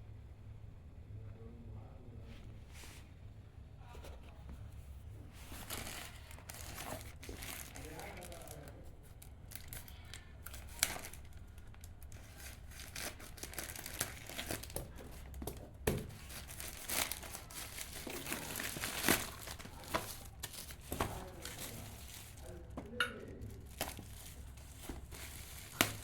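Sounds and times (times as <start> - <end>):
packaging crinkling: 5.4 - 26.0.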